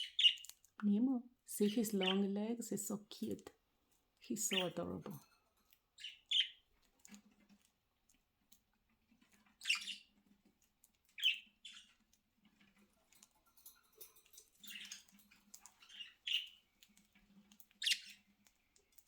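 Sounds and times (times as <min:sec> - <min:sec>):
budgerigars chirping: 0:00.0 - 0:00.5, 0:06.0 - 0:06.6, 0:09.6 - 0:10.1, 0:11.1 - 0:12.0, 0:14.6 - 0:16.7, 0:17.6 - 0:18.3.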